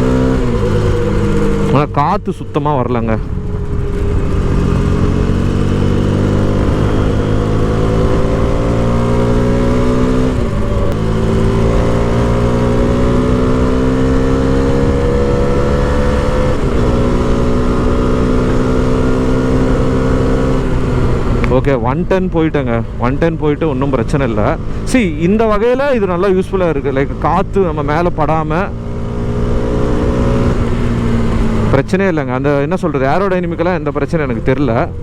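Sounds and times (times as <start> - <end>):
motorcycle engine accelerating: 0.0 - 35.0.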